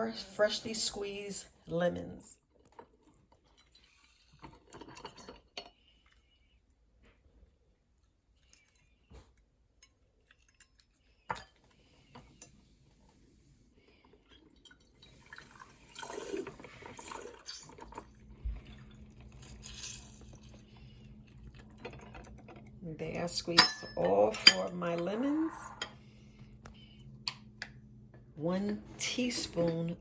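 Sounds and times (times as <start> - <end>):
juice dripping and splattering: 14.2 - 22.1.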